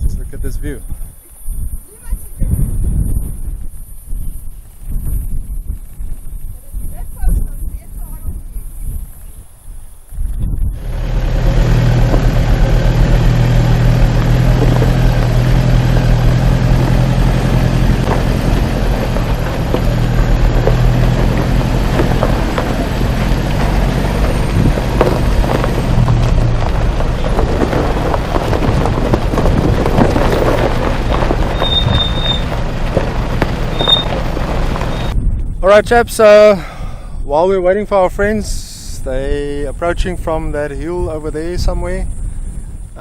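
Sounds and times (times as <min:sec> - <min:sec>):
diesel engine running: 0:10.7 - 0:35.2
knocks and crunches: 0:11.6 - 0:35.2.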